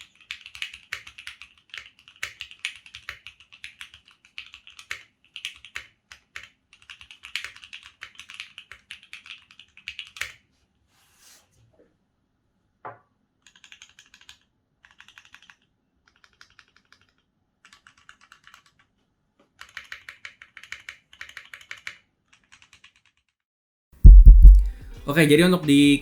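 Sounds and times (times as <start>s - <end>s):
mechanical keyboard typing: 0.2s - 10.2s, 13.4s - 18.9s, 19.6s - 23.2s.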